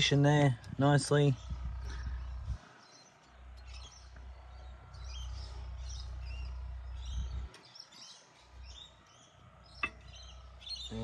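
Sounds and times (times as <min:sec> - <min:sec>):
low rumble: 0:00.0 - 0:07.6
small birds chirping: 0:00.0 - 0:11.0.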